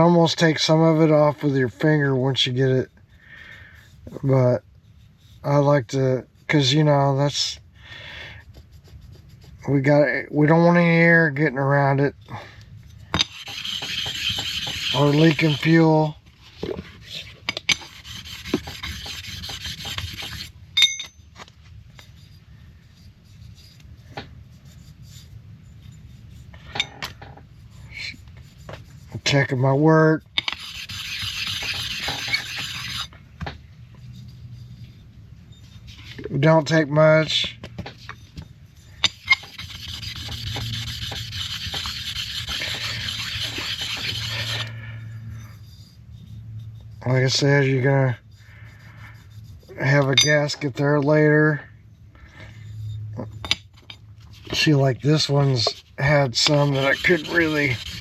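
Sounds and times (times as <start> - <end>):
scrubbing on metal: 8.3 - 11.2, 12.8 - 20.6, 21.9 - 33.2, 33.8 - 51.0, 52.6 - 58.0
sharpening stone scraping metal: 13.2 - 15.9, 17.0 - 21.2, 30.3 - 33.1, 38.0 - 50.4, 54.3 - 58.0
ringing metallic clink: 20.8 - 21.3.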